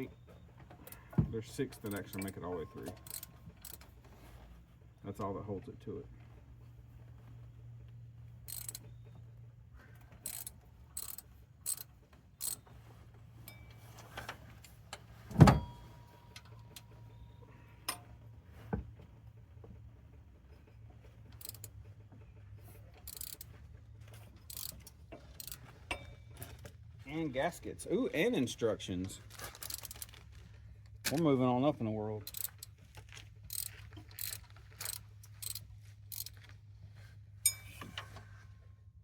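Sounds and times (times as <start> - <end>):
metal tools clinking: 0.0 - 4.1, 8.4 - 9.2, 13.4 - 18.1, 24.2 - 26.8, 29.4 - 30.3, 37.4 - 38.2
ratchet wrench clicking: 1.9 - 3.9, 8.5 - 8.9, 10.2 - 12.6, 21.4 - 21.7, 23.0 - 23.6, 24.5 - 26.1, 29.6 - 30.1, 32.2 - 32.7, 33.5 - 36.4.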